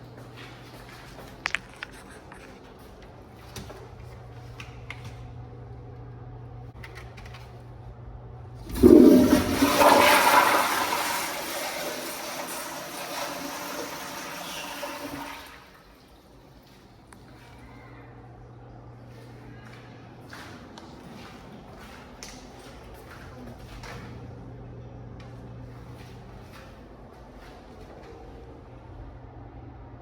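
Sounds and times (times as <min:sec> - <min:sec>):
low room hum: 0:00.0 - 0:30.0
toilet flushing: 0:08.6 - 0:17.0.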